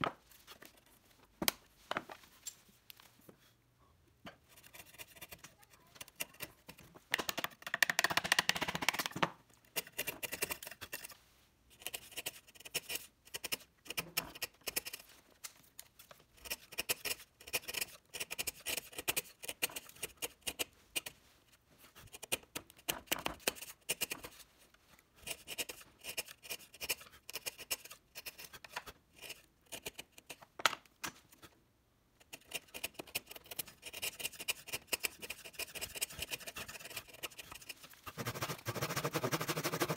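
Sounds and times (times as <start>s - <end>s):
tools scraping wood: 4.3s - 15.1s, 16.2s - 21.2s, 21.8s - 24.5s, 25.2s - 30.4s, 32.2s - 39.9s.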